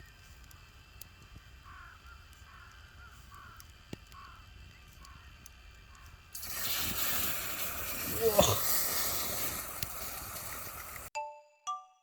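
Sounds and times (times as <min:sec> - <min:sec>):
faint bird calls: 0:01.4 - 0:06.2.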